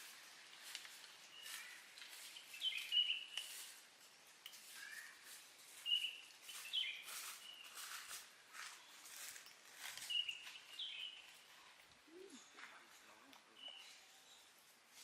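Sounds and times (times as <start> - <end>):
soft rustles: 0.0 - 15.0
high-pitched chirping calls: 1.3 - 3.7, 4.6 - 8.0.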